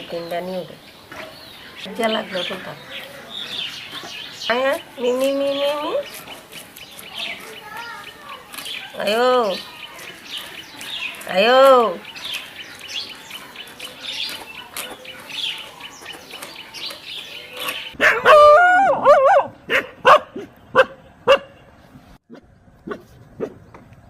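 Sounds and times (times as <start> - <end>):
dog yelping: 17.7 - 21.5
dog barking: 18.0 - 21.6.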